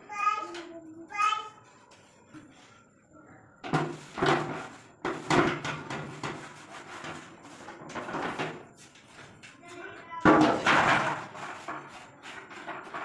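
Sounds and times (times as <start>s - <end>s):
scraping and rubbing strokes: 3.8s - 9.6s, 11.2s - 13.0s.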